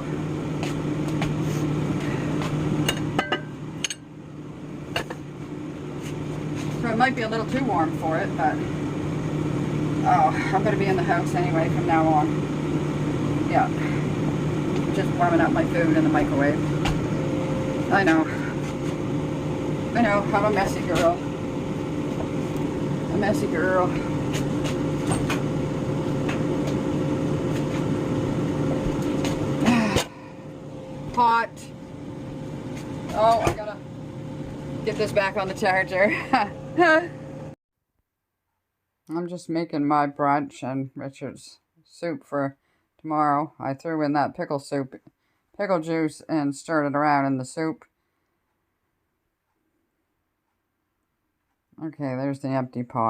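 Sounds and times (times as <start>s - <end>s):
low mechanical hum: 0.0s - 37.6s.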